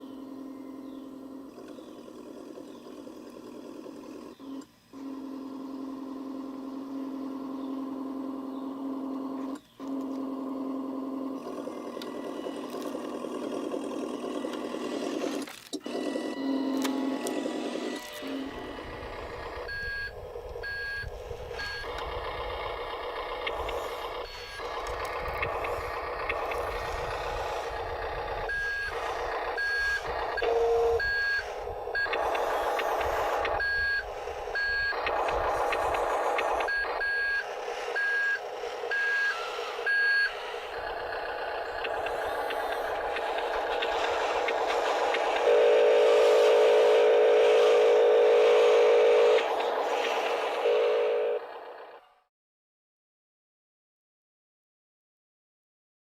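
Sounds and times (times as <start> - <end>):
loud steady buzzing tone: 0.0 - 1.9, 4.3 - 12.9, 16.3 - 51.8
toy truck motor drone: 0.0 - 52.3
reversing beeper beeps: 19.6 - 22.0, 28.4 - 35.8, 36.4 - 43.8.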